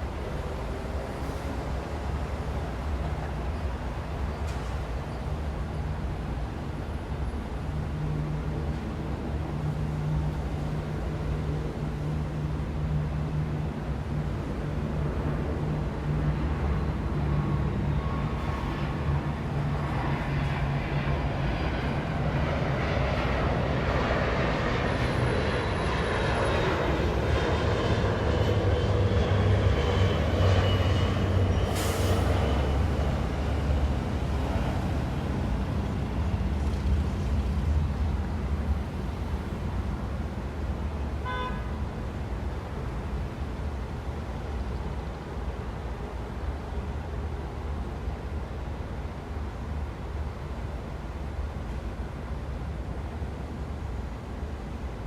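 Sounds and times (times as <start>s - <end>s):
street traffic engines humming: 0.0s - 55.0s.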